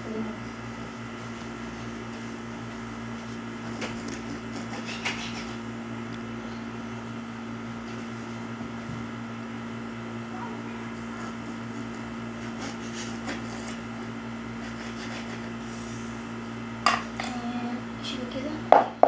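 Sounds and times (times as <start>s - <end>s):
household appliance humming: 0.0s - 19.0s.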